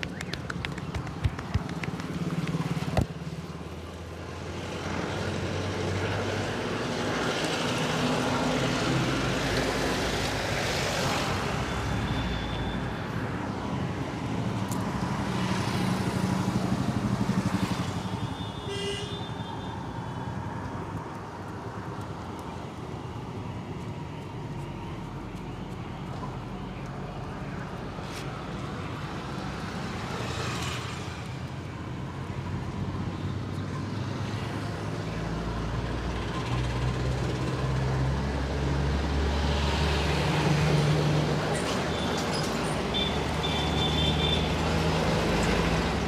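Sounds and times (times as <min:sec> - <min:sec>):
sharp clicks: 0:00.0 - 0:03.1
traffic passing: 0:00.0 - 0:46.0
car horn toot: 0:18.4 - 0:19.7.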